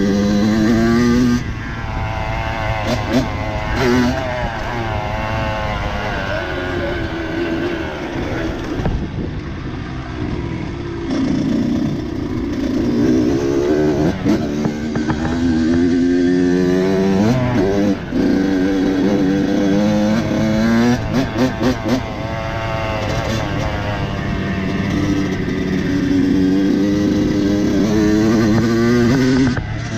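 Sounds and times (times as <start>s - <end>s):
dirt bike engine revving: 0.0s - 29.9s.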